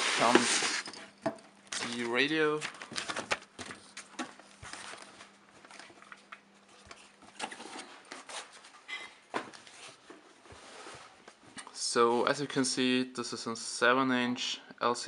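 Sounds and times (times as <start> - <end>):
packaging rustling and crinkling: 0.0 - 1.0, 1.7 - 6.2.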